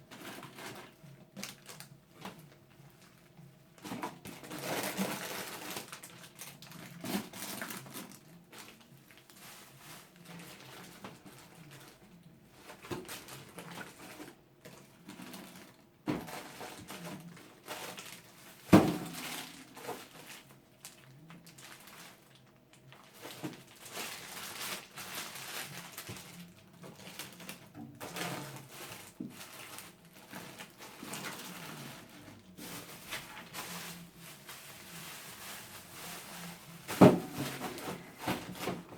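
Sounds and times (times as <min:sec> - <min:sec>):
packaging crinkling: 0:00.2 - 0:03.1, 0:03.8 - 0:12.0, 0:12.6 - 0:38.9.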